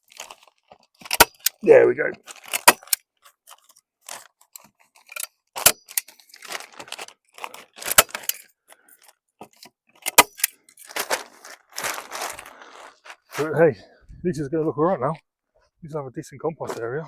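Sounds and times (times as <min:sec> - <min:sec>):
plastic sheet rustling: 0:06.3 - 0:08.2, 0:10.8 - 0:13.2.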